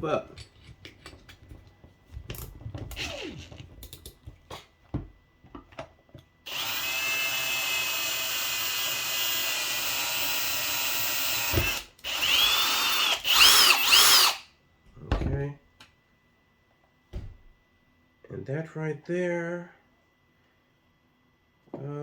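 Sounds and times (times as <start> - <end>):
power drill boring a hole: 2.9 - 3.6, 6.5 - 14.4.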